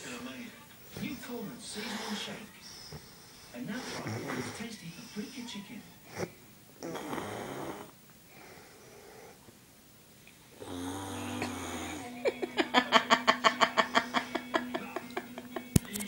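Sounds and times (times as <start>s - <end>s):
man snoring: 6.8s - 9.4s, 10.6s - 12.1s.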